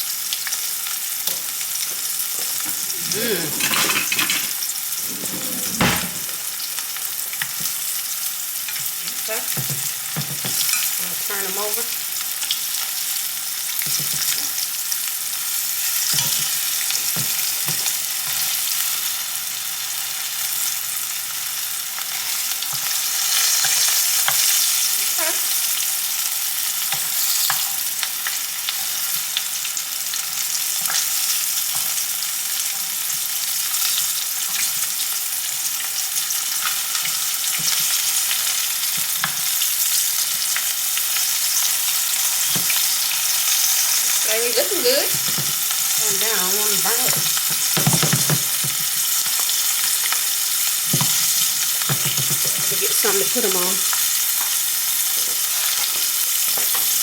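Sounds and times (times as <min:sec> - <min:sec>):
food deep-frying in oil: 0:00.0 - 0:57.0.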